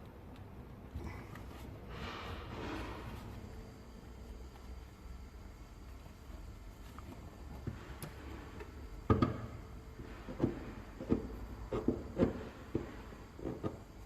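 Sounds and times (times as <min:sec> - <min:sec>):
hard objects knocking and clicking: 0:07.6 - 0:14.0.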